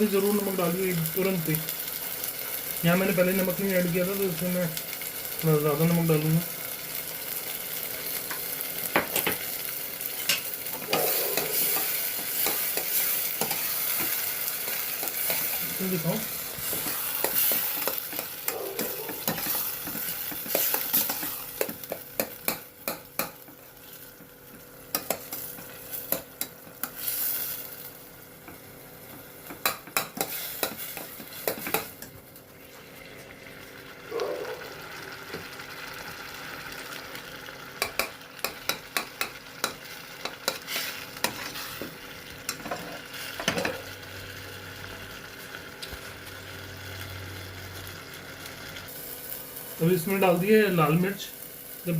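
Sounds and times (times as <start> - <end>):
food sizzling in a pan: 0.0 - 51.9
spoon scraping a pan: 10.2 - 15.6, 16.6 - 23.4, 29.6 - 31.9, 37.8 - 41.8, 42.5 - 43.8
utensil clicking against pan: 37.8 - 40.6.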